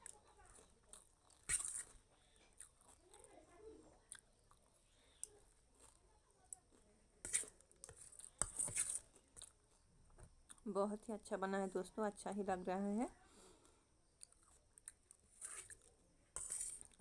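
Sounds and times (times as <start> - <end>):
person chewing crunchy food: 0.0 - 3.2, 4.1 - 6.0, 6.6 - 10.6, 13.6 - 17.0.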